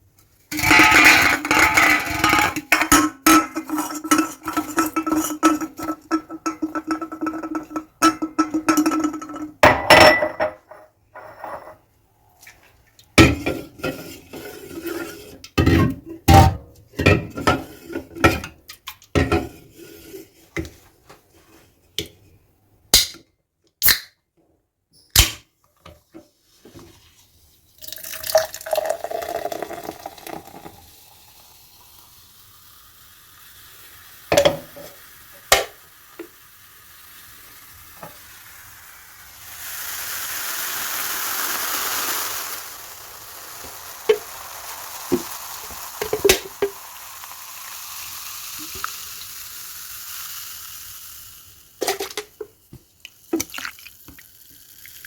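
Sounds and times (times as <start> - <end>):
carbonated drink fizzing: 0.5 - 9.7, 27.7 - 52.4, 53.0 - 55.0
drink cans clicking and knocking: 0.5 - 10.7, 45.1 - 46.8, 51.8 - 54.3
liquid pouring: 27.8 - 35.5, 37.7 - 52.3, 53.0 - 55.0.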